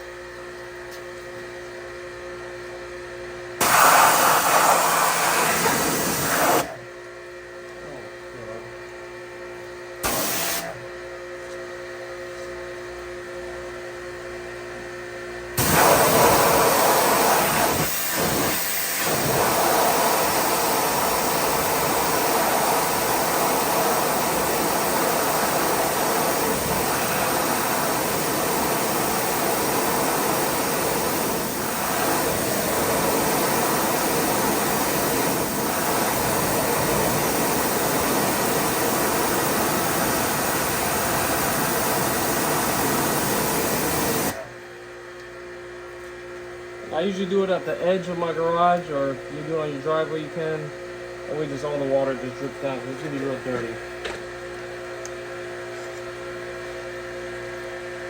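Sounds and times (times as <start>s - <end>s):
pressure washer spraying water: 3.6s - 6.7s, 10.0s - 10.7s, 15.6s - 44.4s.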